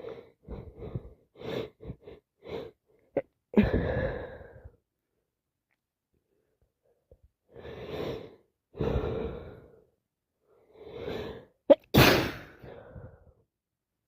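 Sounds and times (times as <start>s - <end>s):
woman gasping in-breaths: 3.6s - 4.8s
woman sneezing: 11.7s - 12.6s.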